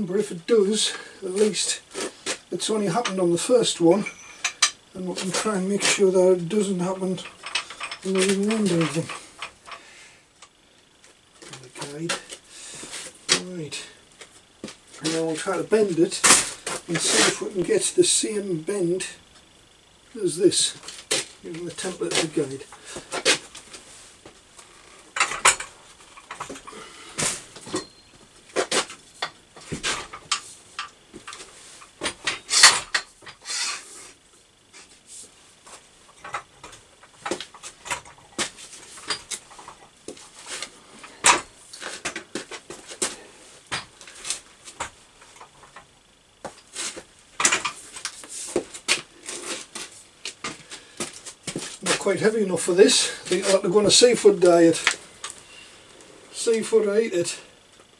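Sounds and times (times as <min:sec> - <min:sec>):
metallic clicks and clanks of pipe bender: 0:04.0 - 0:10.5, 0:32.0 - 0:33.8.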